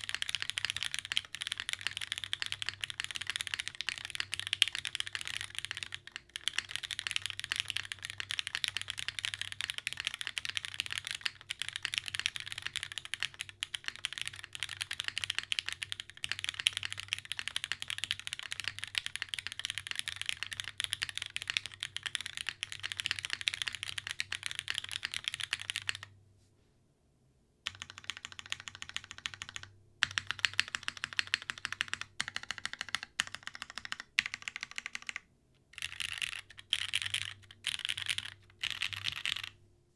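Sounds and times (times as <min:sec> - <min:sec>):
typing on mechanical keyboard: 0:00.0 - 0:26.1, 0:27.6 - 0:39.6.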